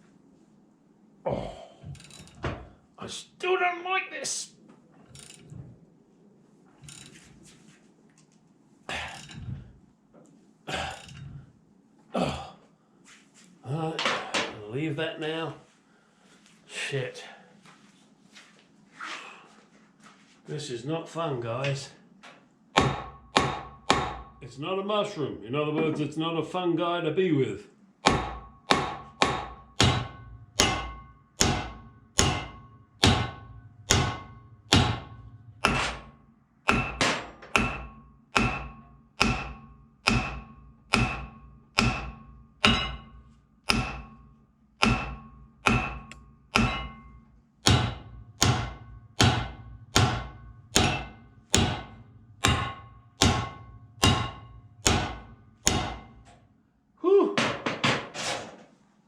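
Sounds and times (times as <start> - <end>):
hammer striking steel: 1.8 - 2.7, 5.1 - 5.6, 8.9 - 9.6, 10.7 - 11.4, 22.8 - 24.4, 28.0 - 56.5.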